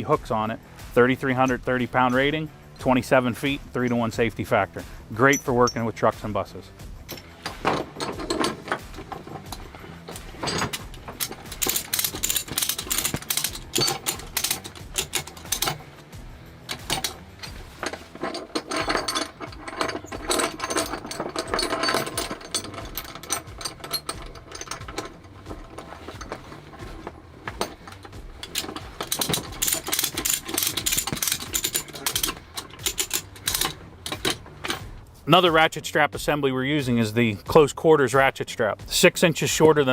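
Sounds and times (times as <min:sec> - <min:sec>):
ratchet buckle clicking: 0:07.0 - 0:34.9.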